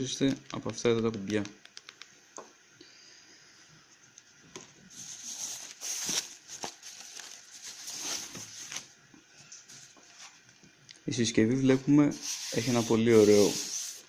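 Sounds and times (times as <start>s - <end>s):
packaging rustling and crinkling: 4.9s - 9.0s.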